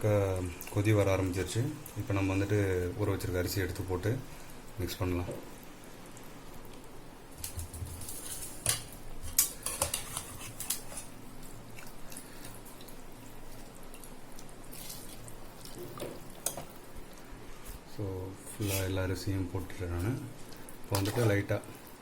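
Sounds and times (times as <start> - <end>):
pot bubbling: 7.6 - 17.6.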